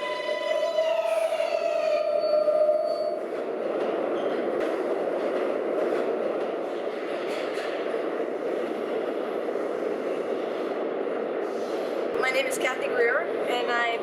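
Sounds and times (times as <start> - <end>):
subway train rumbling: 0.0 - 14.0.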